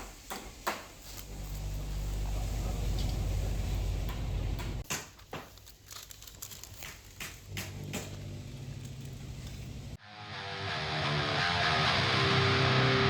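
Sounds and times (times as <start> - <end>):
forklift engine rumbling: 1.3 - 4.8.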